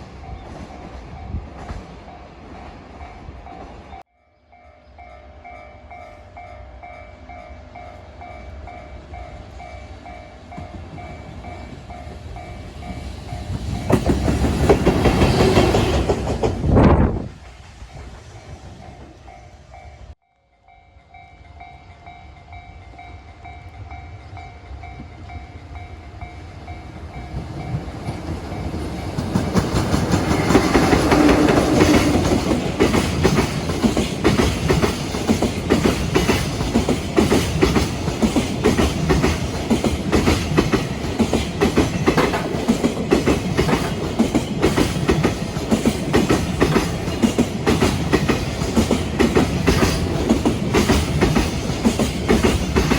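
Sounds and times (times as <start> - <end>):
freight train passing: 0.0 - 52.9
level crossing warning bell: 3.0 - 13.8
train wheels clacking on rail joints: 10.4 - 19.5, 26.9 - 52.9.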